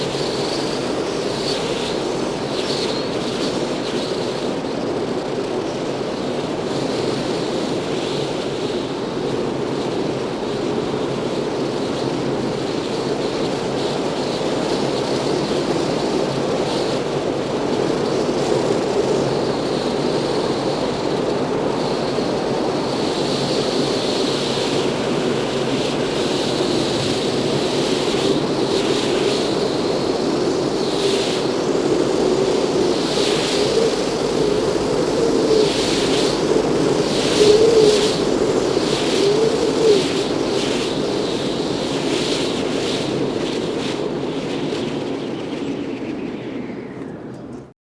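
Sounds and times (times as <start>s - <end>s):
rushing wind roar: 0.0s - 47.7s.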